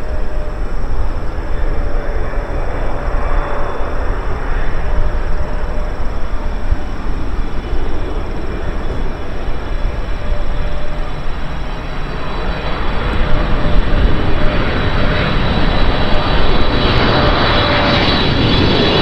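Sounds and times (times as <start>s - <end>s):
jet engines roaring: 0.0s - 19.0s.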